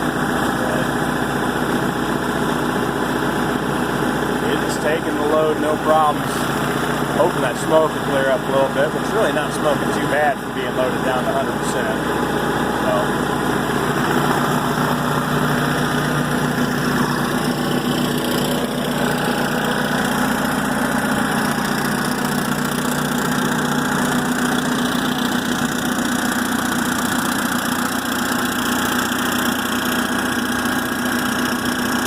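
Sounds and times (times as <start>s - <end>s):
diesel generator running: 0.0s - 32.0s.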